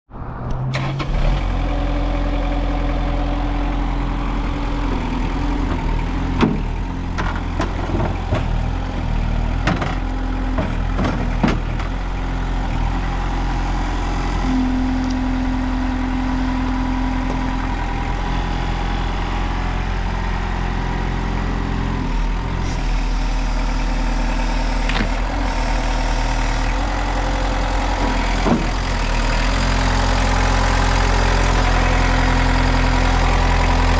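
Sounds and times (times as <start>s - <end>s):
diesel engine idling: 0.7s - 33.9s
clanks and knocks: 6.4s - 12.0s
mid-pitched whine: 14.3s - 17.8s.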